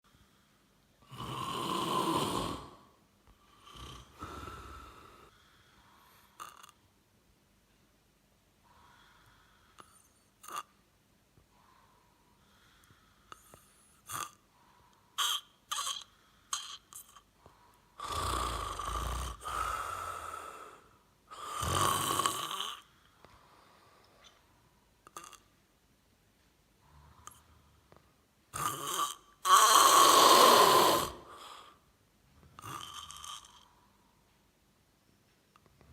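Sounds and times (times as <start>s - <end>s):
man snoring: 1.0s - 2.9s, 3.5s - 5.3s, 18.0s - 22.9s, 28.6s - 31.6s, 32.6s - 33.6s.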